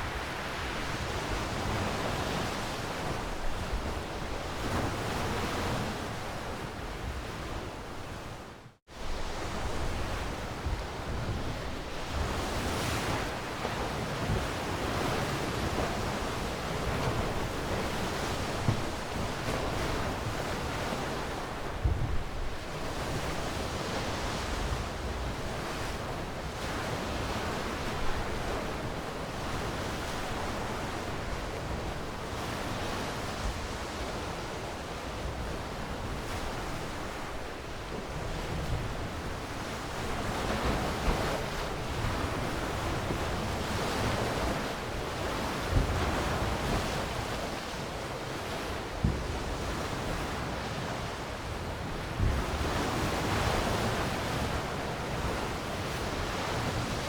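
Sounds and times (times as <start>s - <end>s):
wind buffeting microphone: 0.0s - 47.7s, 48.3s - 57.0s
ocean waves washing on shore: 0.0s - 57.0s.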